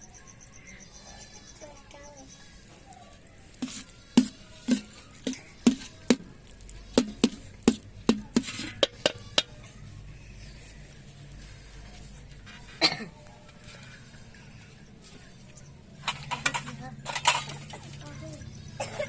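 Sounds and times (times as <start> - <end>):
utensils knocking on cookware: 7.0 - 9.5.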